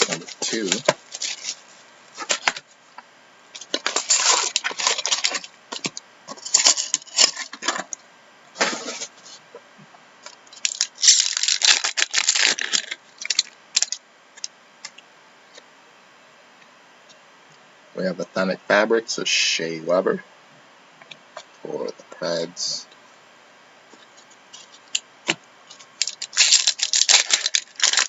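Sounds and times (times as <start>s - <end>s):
plastic and cardboard crinkling: 0.0s - 2.7s, 3.6s - 7.8s, 10.5s - 14.5s, 24.0s - 28.0s.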